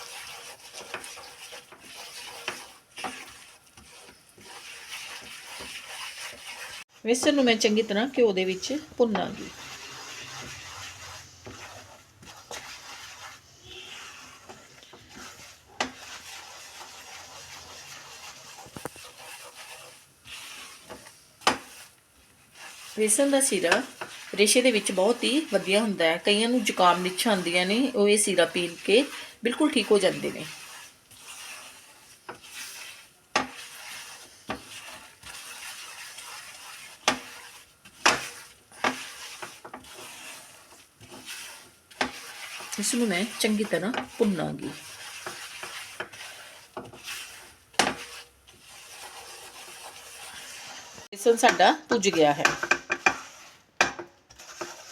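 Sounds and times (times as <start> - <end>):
faint sizzle: 0.0 - 54.9
flour scraping in a pan: 0.0 - 54.9
utensil tapping on pan: 38.0 - 39.8, 51.4 - 54.8
ladle knocking against pan: 52.4 - 53.2.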